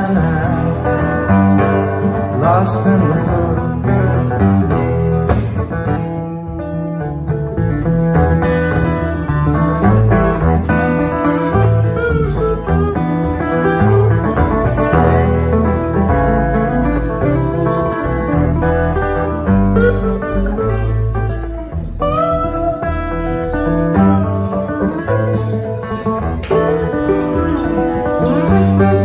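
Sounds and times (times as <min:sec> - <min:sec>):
plucked guitar: 0:00.0 - 0:29.0
steady bass line: 0:00.0 - 0:29.0.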